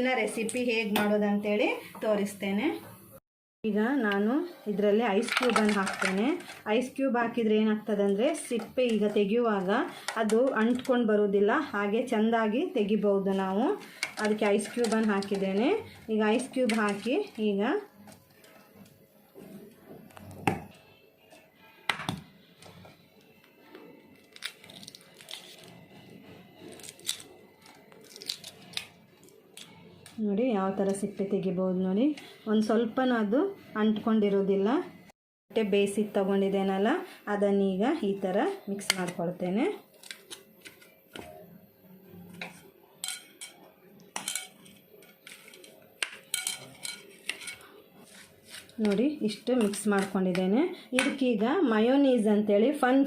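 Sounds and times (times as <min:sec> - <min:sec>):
eggshell crinkling while peeled: 0:24.1 - 0:25.8, 0:26.6 - 0:29.8
eggshell cracking: 0:26.8 - 0:27.3, 0:27.9 - 0:28.9
spoon scraping and clinking bowl: 0:42.5 - 0:48.6.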